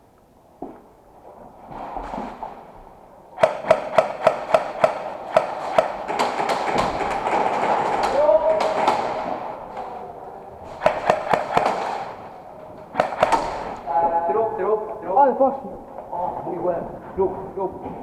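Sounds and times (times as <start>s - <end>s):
airsoft guns firing: 3.4s - 13.9s
steady background din: 3.4s - 18.0s.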